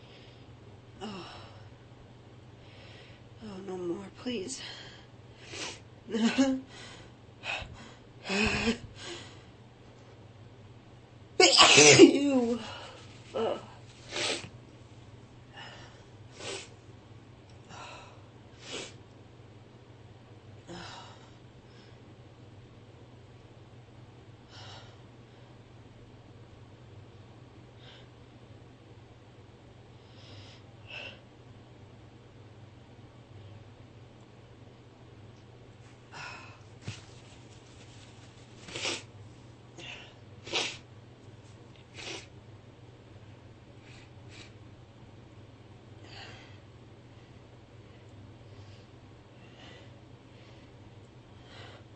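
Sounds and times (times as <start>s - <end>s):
woman sneezing: 11.4s - 12.8s
sharp nose sniffs: 42.0s - 42.3s.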